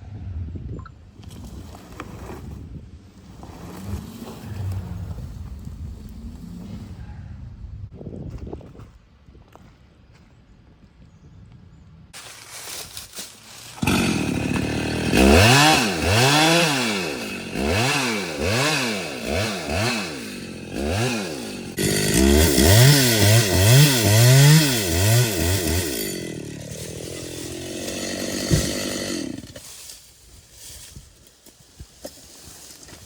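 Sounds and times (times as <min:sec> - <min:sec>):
chainsaw engine revving: 0:13.8 - 0:29.6.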